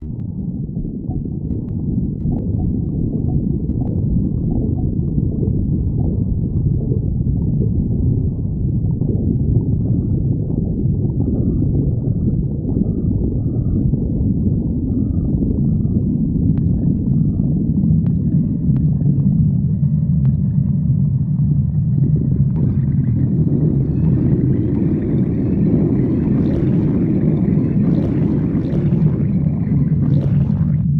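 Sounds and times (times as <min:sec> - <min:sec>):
stomach growling and gurgling: 0:00.0 - 0:30.9.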